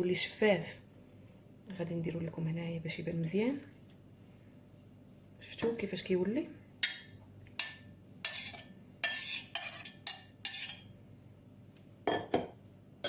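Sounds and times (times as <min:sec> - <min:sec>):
metal spoon scraping saucepan: 0:06.8 - 0:10.9.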